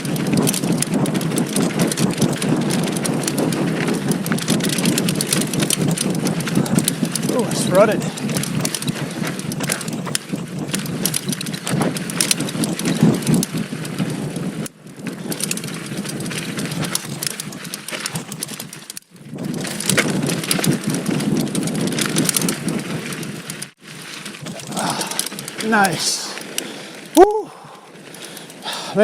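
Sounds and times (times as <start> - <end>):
tyres crunching over dirt: 0.0 - 27.2
bike rattling over bumps: 0.0 - 29.0.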